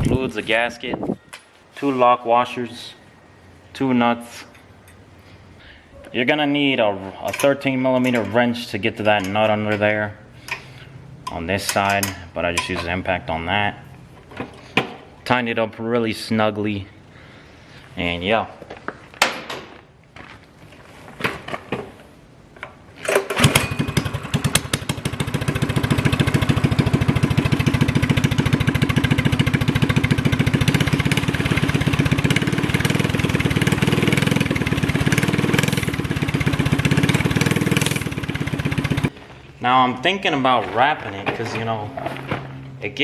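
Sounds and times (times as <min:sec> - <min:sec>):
minibike engine running loud: 0:23.4 - 0:39.1.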